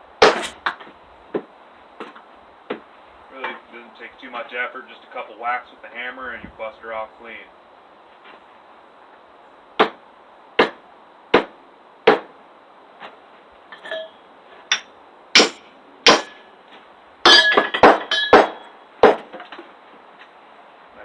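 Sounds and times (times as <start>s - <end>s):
hammer striking hatchet: 0.2s - 0.6s, 9.8s - 10.0s, 10.6s - 11.5s, 12.1s - 12.3s, 14.7s - 16.4s, 17.3s - 19.3s
knocks and clinks: 13.7s - 16.4s, 17.3s - 18.8s.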